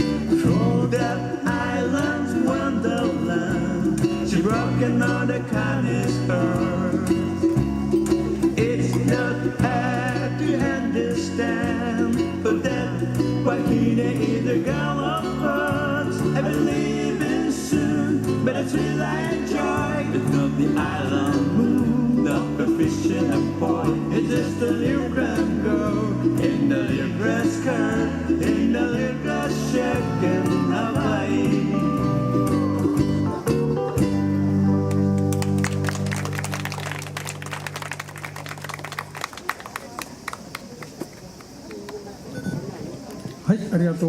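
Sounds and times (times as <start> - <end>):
solo vocal melody: 0.0 - 33.4
bass line: 0.0 - 38.4.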